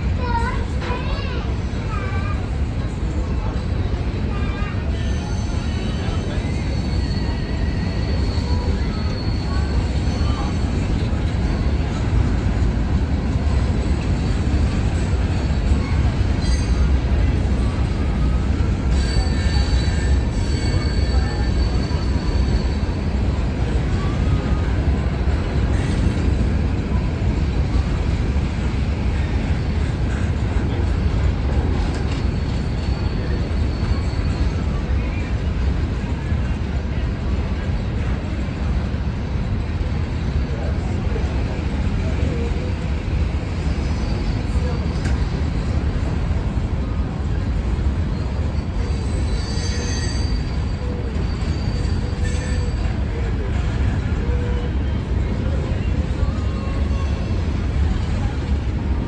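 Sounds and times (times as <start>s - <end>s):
train wheels rumbling on rail: 0.0s - 59.0s
wheel squeals: 5.0s - 10.6s, 48.1s - 52.9s.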